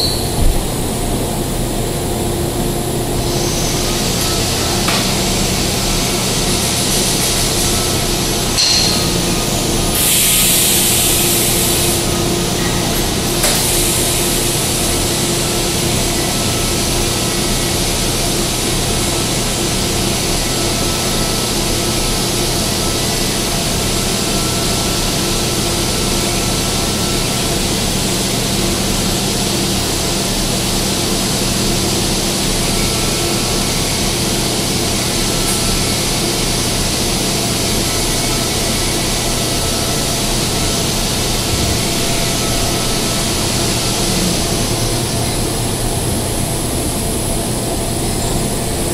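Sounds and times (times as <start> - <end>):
welding arc hiss: 3.2 - 16.4.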